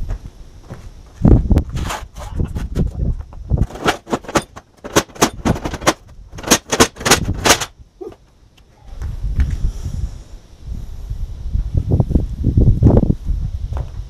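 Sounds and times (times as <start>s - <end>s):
steel plates clanking: 3.6s - 7.7s.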